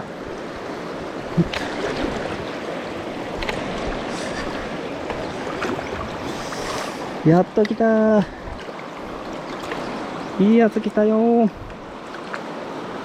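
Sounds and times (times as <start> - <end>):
river flowing over shallows: 0.0 - 13.0.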